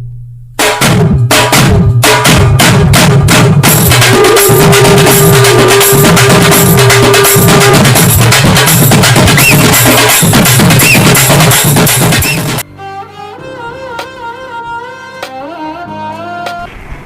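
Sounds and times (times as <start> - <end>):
drum-driven film score ringtone: 0.6 - 12.6.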